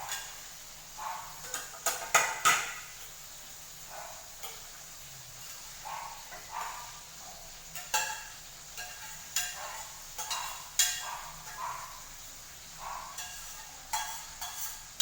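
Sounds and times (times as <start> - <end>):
utensil scraping cooking pot: 12.9 - 15.0.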